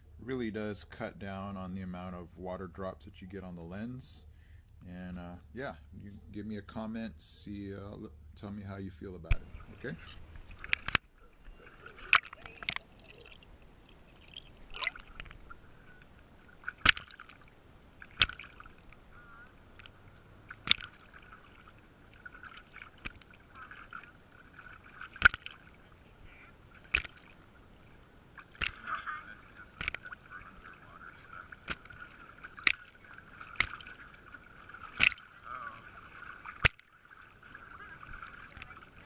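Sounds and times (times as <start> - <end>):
water sloshing and splashing: 9.0 - 39.0.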